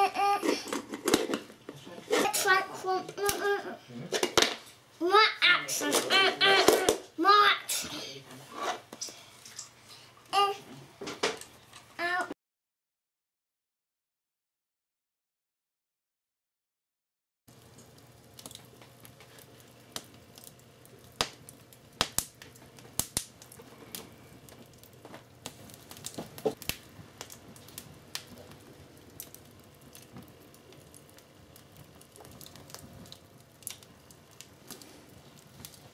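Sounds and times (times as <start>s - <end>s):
faint steady hum: 17.5s - 35.9s.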